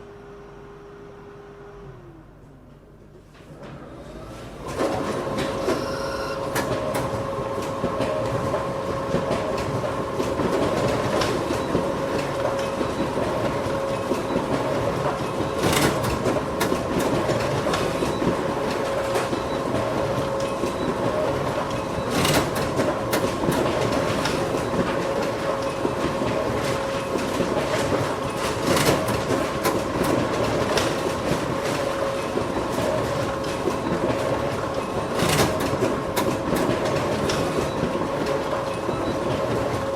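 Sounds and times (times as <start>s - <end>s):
photocopier whirring: 3.6s - 39.9s
photocopier clack: 13.8s - 39.9s.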